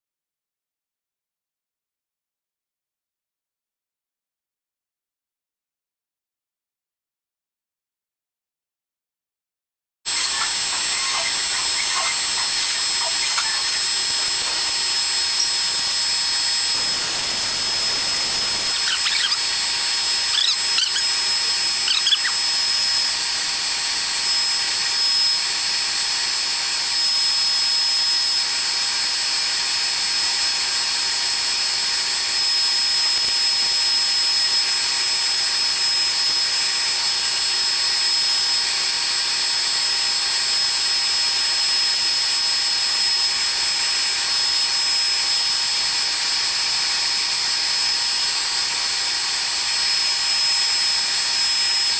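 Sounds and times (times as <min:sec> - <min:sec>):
short squeaks: 0:10.1 - 0:16.0, 0:18.7 - 0:23.1
welding machine high whine: 0:10.1 - 0:51.9.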